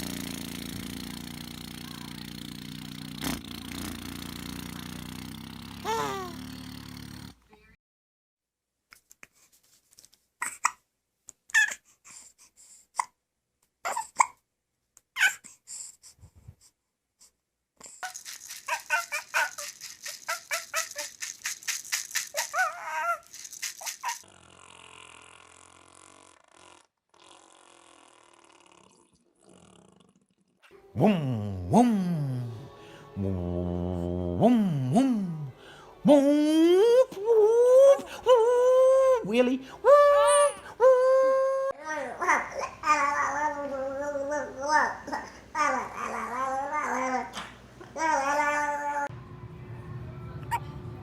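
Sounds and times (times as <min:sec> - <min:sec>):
short high vocal sounds: 0:05.8 - 0:06.6, 0:30.9 - 0:41.8
rattle shaken fast: 0:17.9 - 0:24.3
low mechanical hum: 0:41.0 - 0:51.0.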